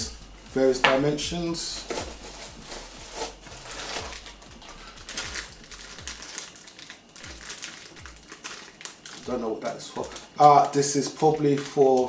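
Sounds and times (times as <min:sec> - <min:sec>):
plastic bags crinkling: 0:00.0 - 0:12.0
small hard pieces clicking: 0:03.6 - 0:12.0.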